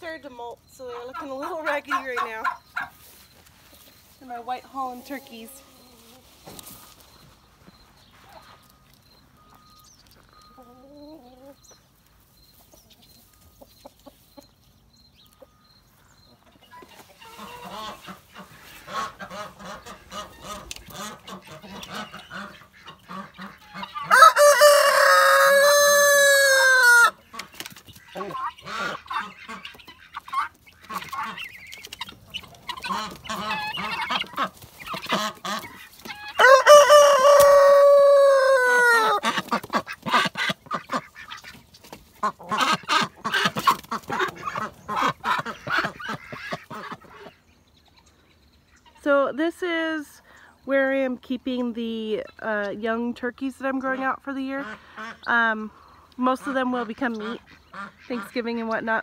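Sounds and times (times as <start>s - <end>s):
chickens clucking: 0.0s - 59.0s
rooster crowing: 24.0s - 27.2s, 36.3s - 39.2s.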